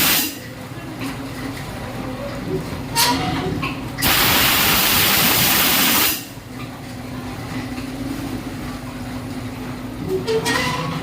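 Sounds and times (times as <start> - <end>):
loud hissing jet blast: 0.0 - 0.4, 4.0 - 6.3
machine humming: 4.0 - 6.4.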